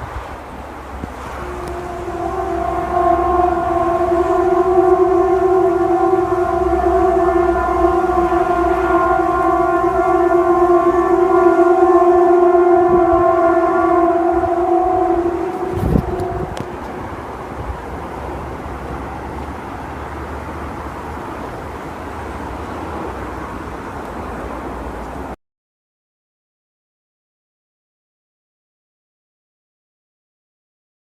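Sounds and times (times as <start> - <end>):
loud horn-like drone: 1.0 - 24.9
short low rumble: 14.4 - 17.8.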